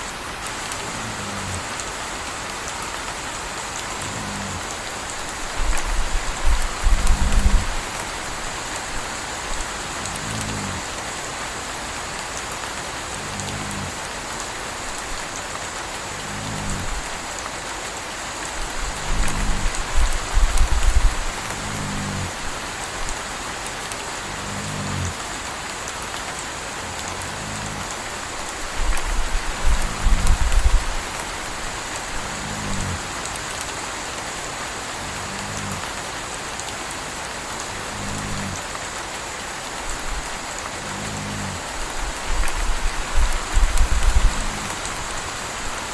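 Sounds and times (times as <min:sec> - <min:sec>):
steady rain falling: 0:00.0 - 0:45.9
puppy snoring: 0:00.7 - 0:01.8, 0:03.8 - 0:08.3, 0:09.6 - 0:11.0, 0:13.1 - 0:14.0, 0:16.2 - 0:17.2, 0:18.6 - 0:23.2, 0:24.2 - 0:25.2, 0:26.8 - 0:33.1, 0:35.0 - 0:35.9, 0:37.7 - 0:38.6, 0:39.9 - 0:45.4
deep low rumbles: 0:03.8 - 0:08.5, 0:18.6 - 0:23.2, 0:26.9 - 0:33.2, 0:40.0 - 0:45.4.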